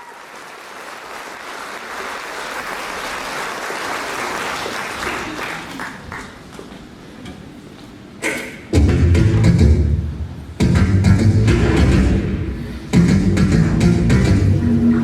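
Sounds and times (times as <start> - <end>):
audience applauding: 0.0 - 6.6.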